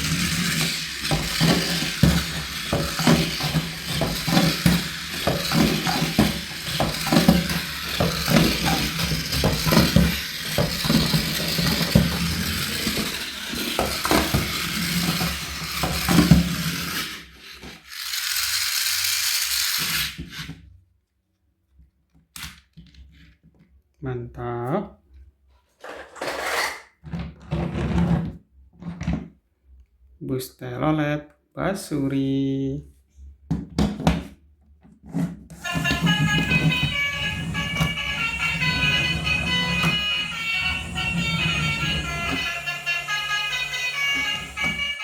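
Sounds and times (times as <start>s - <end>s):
toy motor and gears whirring: 0.0s - 20.7s, 35.6s - 45.0s.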